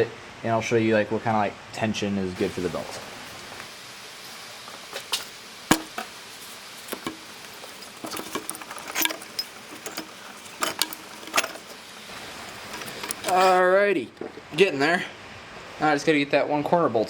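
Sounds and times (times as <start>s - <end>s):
metal clinks and knocks: 5.7s - 14.5s.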